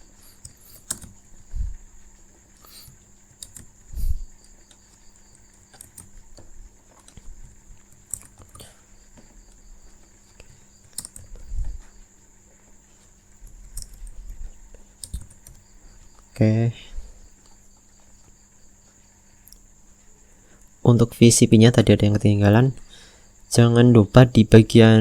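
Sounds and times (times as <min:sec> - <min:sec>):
faint high whine and hum: 0:00.0 - 0:25.0
keyboard and mouse clicks: 0:00.3 - 0:01.2, 0:02.6 - 0:03.8, 0:04.4 - 0:08.7, 0:10.3 - 0:11.8, 0:13.4 - 0:14.4, 0:15.0 - 0:15.6.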